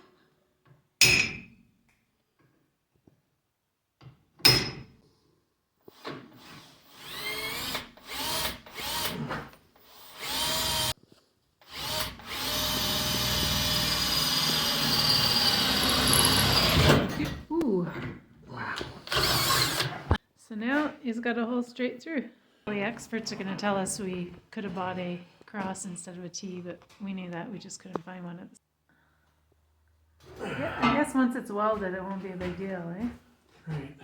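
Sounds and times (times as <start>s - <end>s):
electric drill boring through metal: 5.9s - 11.0s, 11.7s - 17.1s, 19.0s - 20.1s.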